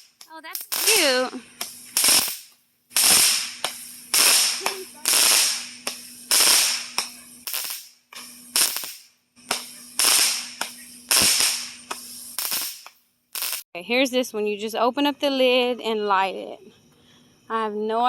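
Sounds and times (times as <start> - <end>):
firework popping and hissing: 0.0 - 13.7.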